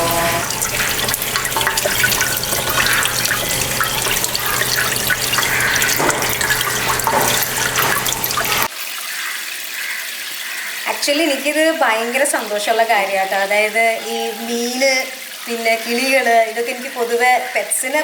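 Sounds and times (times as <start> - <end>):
water pouring and splashing: 0.0 - 10.4.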